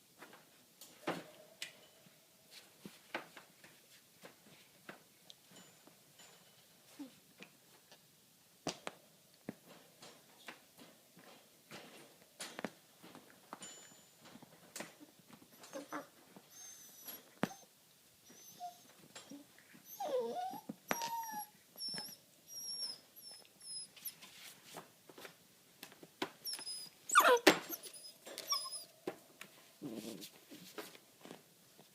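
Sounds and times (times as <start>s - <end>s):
puppy whining and yelping: 15.6s - 24.2s, 26.4s - 29.0s.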